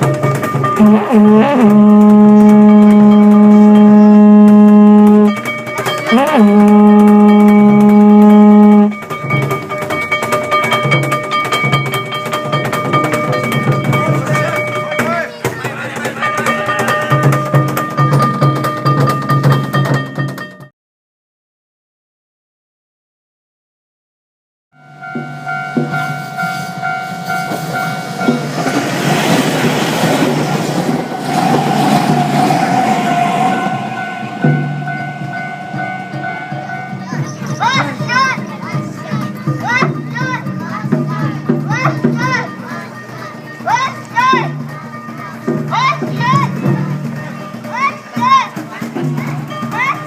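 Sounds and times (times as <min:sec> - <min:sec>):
crossing warning bell ringing: 0:00.0 - 0:15.4, 0:24.8 - 0:39.4
tram running noise: 0:00.0 - 0:20.5, 0:24.9 - 0:43.3
loud held note: 0:00.8 - 0:05.4, 0:06.1 - 0:09.0, 0:29.8 - 0:39.0
low drumbeats: 0:25.0 - 0:42.4
steady ringing tones: 0:30.3 - 0:39.4.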